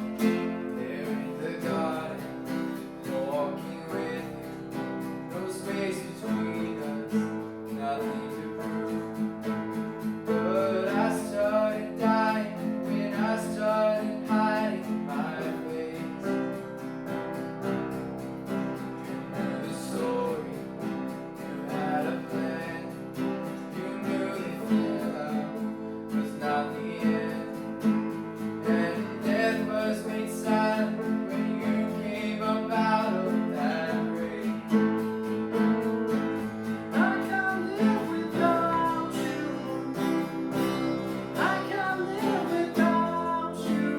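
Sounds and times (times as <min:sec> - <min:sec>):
strummed acoustic guitar: 0:00.0 - 0:43.9.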